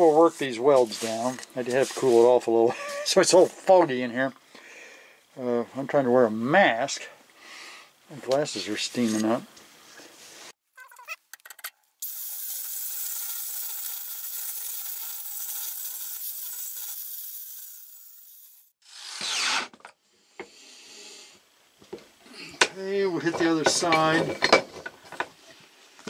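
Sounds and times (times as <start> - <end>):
grinder on steel: 12.0 - 18.7.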